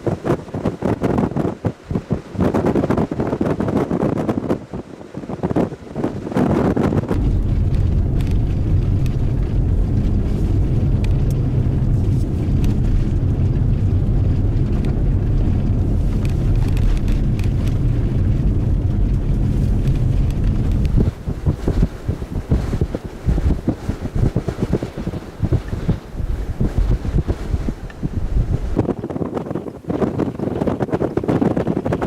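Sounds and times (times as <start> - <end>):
wind buffeting microphone: 0.0 - 32.0
vehicle engine droning: 7.1 - 24.3.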